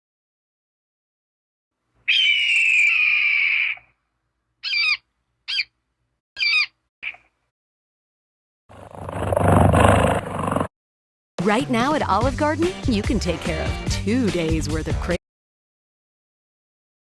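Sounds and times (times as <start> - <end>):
bird calling: 2.1 - 4.0, 4.6 - 5.8, 6.4 - 7.3.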